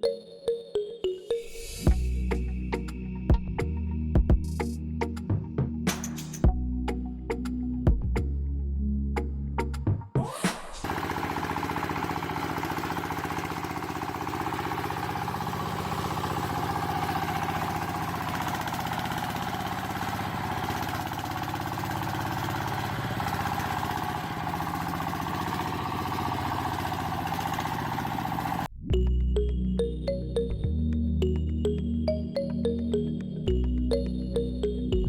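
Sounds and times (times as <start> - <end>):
small engine idling: 10.8 - 28.7.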